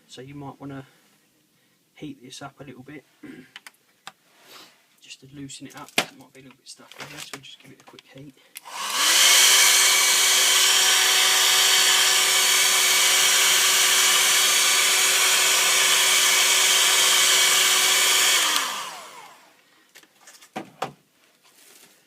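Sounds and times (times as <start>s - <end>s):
hot-air blower running: 8.6s - 19.6s.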